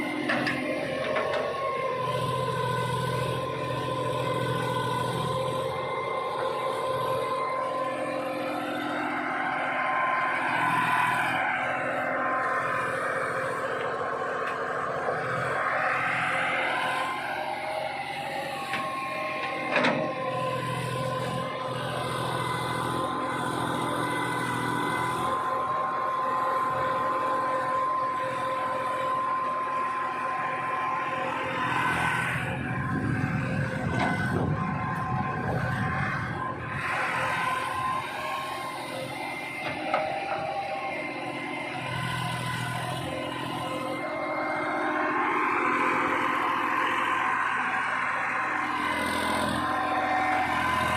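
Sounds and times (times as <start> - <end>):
diesel engine running: 0.0 - 50.9
high steady whine: 32.4 - 41.2.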